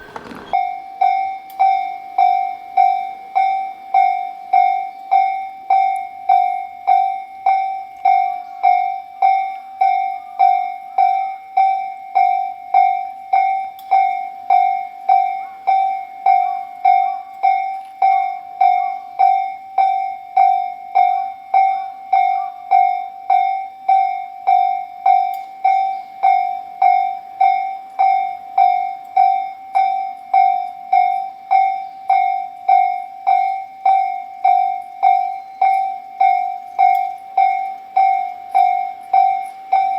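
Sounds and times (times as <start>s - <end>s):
railroad crossing bell ringing: 0.0s - 39.9s.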